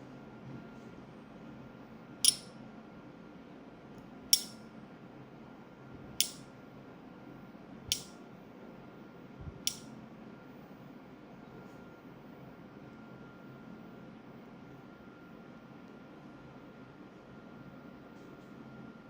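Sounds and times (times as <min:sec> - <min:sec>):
sharp metallic clicks: 0:02.2 - 0:02.5, 0:04.4 - 0:04.6, 0:06.2 - 0:06.4, 0:07.9 - 0:08.2.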